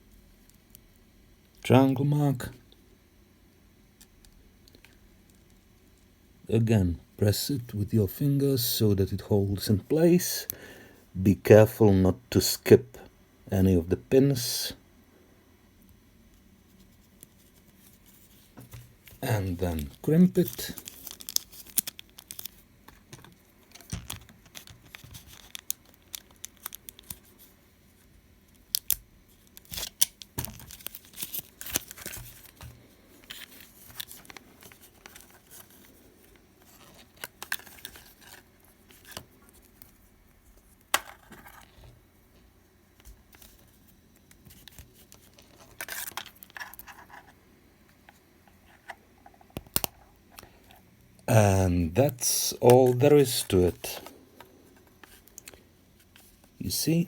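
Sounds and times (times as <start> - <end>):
plastic connector clicks and rustles: 19.9 - 27.2, 28.5 - 35.8, 36.8 - 39.9, 48.0 - 50.8.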